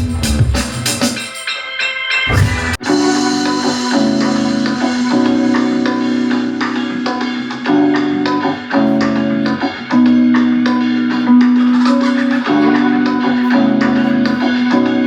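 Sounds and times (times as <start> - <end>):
sharp drum hits: 2.3 - 3.1
keyboard chords: 2.3 - 15.0.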